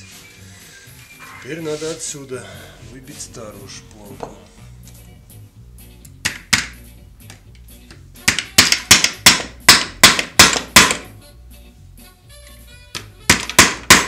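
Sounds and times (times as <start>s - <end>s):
hammer striking metal: 8.3s - 11.1s, 13.3s - 14.0s.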